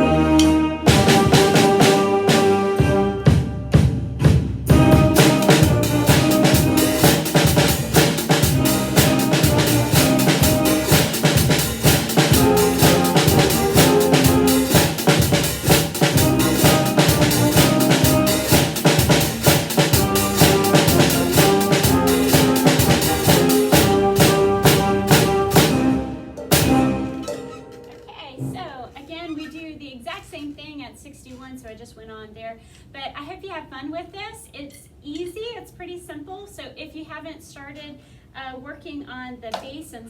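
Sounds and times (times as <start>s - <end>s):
drum kit beat: 0.0s - 27.6s
band accompaniment: 0.0s - 28.6s.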